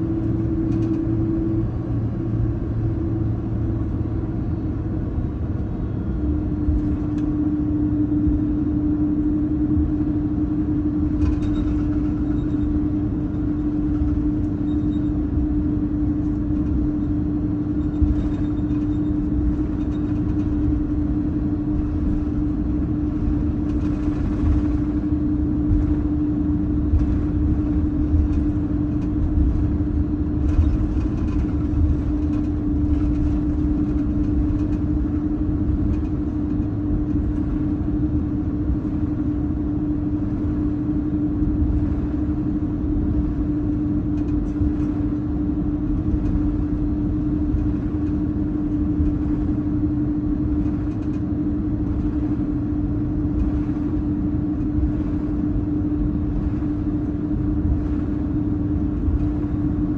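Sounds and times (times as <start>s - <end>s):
airplane cabin engine hum: 0.0s - 59.9s.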